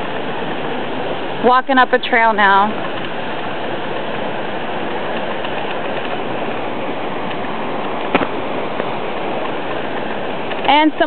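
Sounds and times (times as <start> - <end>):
waterfall rushing: 0.0 - 11.0
short knock: 8.1 - 8.4.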